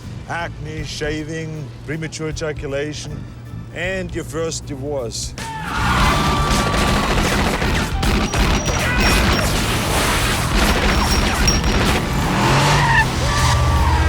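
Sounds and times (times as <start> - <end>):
film music score: 0.0 - 14.0
crashing impacts: 5.8 - 14.0
car engine running hard: 9.2 - 14.0.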